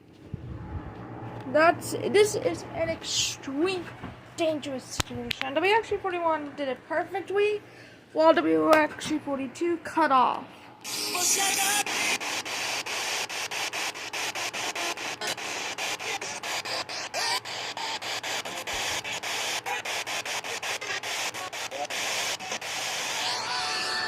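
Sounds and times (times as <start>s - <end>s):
radio static hiss: 10.8s - 24.0s.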